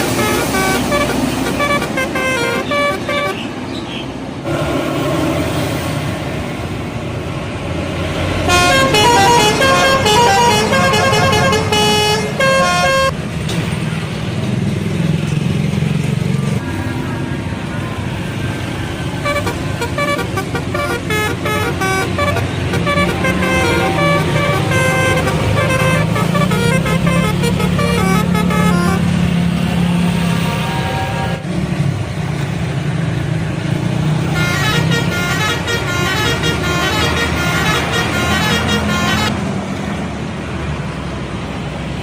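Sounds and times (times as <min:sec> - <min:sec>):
bus horn playing a tune: 0:00.0 - 0:03.6, 0:08.4 - 0:13.2, 0:19.1 - 0:29.6, 0:30.2 - 0:31.5, 0:34.2 - 0:39.4
bus engine running: 0:00.0 - 0:42.0.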